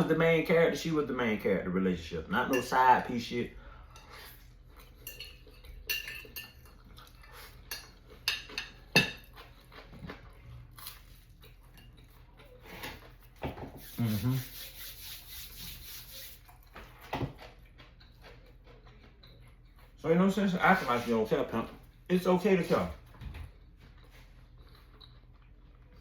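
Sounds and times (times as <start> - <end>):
fork scraping a plate: 3.9 - 9.5, 11.7 - 17.6.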